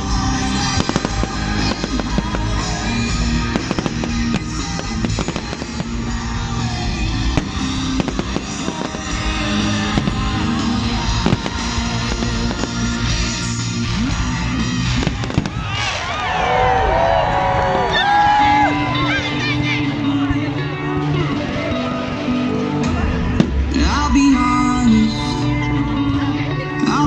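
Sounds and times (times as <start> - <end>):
fireworks bangs and crackles: 0.0 - 16.2
loud music with bass line: 0.0 - 16.2, 18.1 - 27.0.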